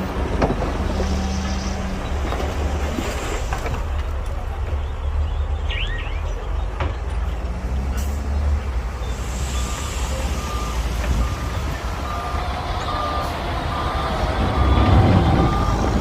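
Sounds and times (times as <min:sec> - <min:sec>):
diesel engine rumble: 0:00.0 - 0:16.0
reversing alarm beeps: 0:09.5 - 0:16.0.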